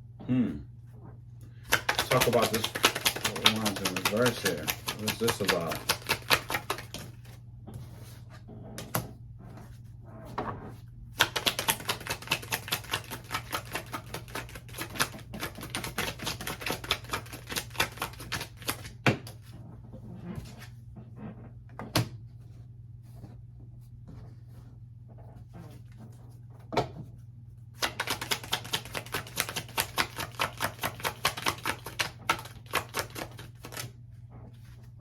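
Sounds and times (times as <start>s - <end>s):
cards shuffling: 1.6s - 8.2s, 11.2s - 19.4s, 27.8s - 33.9s.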